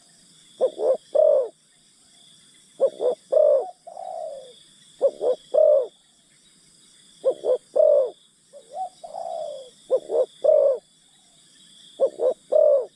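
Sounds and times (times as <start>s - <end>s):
high insect buzz: 0.0s - 12.9s
doves cooing: 0.6s - 1.6s, 2.8s - 6.0s, 7.2s - 10.8s, 12.0s - 12.9s.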